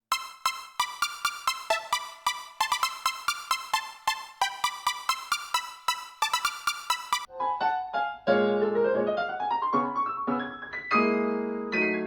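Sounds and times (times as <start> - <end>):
synthesizer notes: 0.0 - 7.3.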